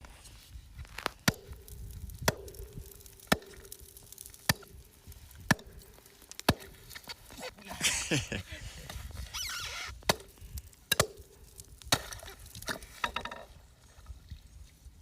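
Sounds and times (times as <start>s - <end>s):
ice chisel chopping into ice: 1.0s - 4.8s, 5.4s - 6.9s.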